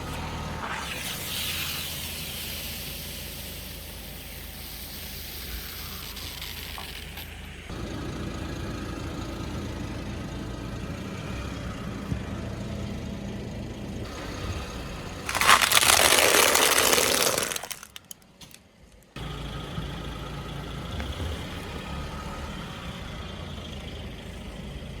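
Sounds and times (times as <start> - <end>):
tyre crushing an object: 15.3 - 18.2
car engine idling: 17.3 - 25.0.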